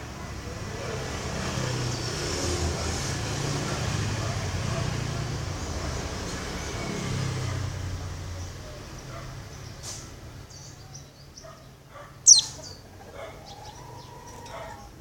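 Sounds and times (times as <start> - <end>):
passing vehicle rumble: 0.0 - 10.5, 12.2 - 15.0
faint high bird chirps: 12.2 - 12.8
bird high-pitched falling call: 12.3 - 12.6.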